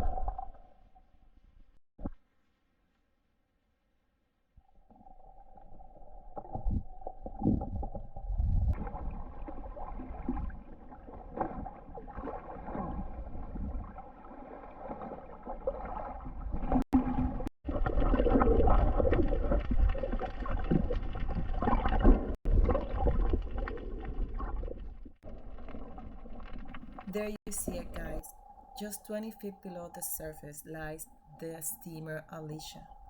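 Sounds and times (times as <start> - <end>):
muffled water sloshing: 5.5 - 29.3.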